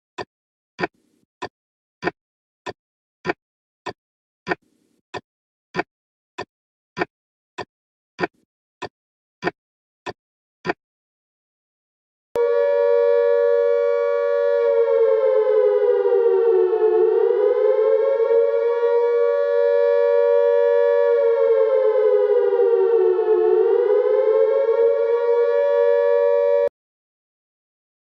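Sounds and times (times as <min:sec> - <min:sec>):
siren-like wailing tone: 0:12.4 - 0:26.7.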